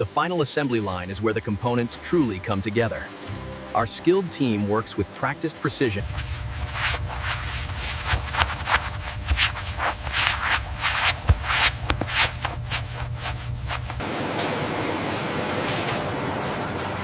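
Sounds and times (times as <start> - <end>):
steady low hum: 5.8 - 14.1
rubbing and scraping by hand: 5.9 - 14.0.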